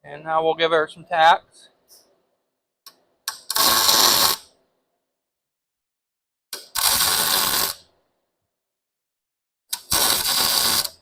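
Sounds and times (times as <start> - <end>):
welding arc crackling: 3.5 - 4.5, 6.6 - 7.9, 9.7 - 11.0.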